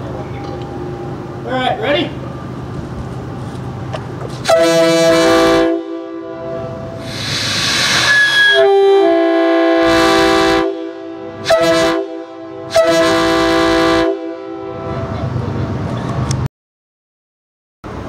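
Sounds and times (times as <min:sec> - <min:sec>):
train air horn blasts: 0:04.4 - 0:15.1
rush of air: 0:06.8 - 0:08.5.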